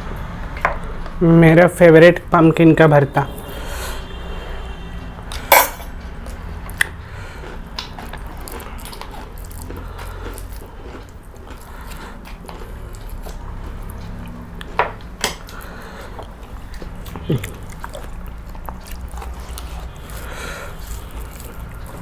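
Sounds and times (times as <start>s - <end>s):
tableware clinking: 5.4s - 6.0s
soft chewing: 6.0s - 22.0s.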